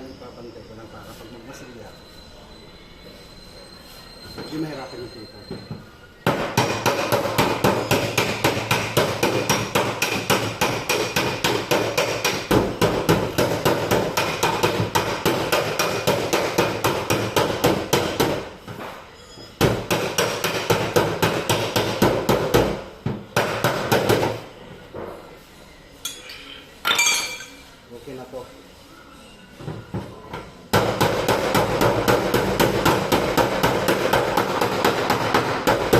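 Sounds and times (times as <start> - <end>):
hammer tapping on sheet metal: 5.6 - 18.8, 19.6 - 24.4, 30.7 - 35.9.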